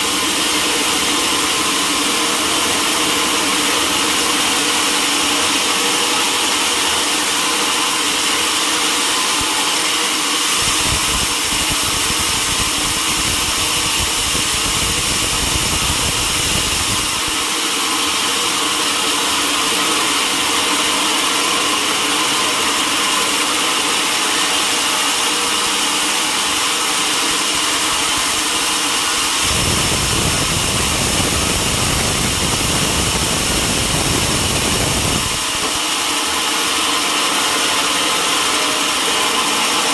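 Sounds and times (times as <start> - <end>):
sawmill high-pitched whine: 0.0 - 39.9
deep rumble: 29.4 - 35.3.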